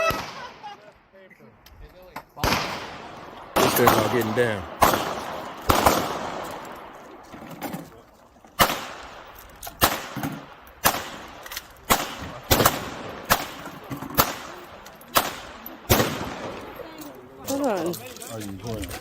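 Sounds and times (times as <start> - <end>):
fainter gunshots: 2.4 - 6.6, 9.8 - 16.6
loud gunshots with echo: 2.4 - 7.0, 8.6 - 16.7.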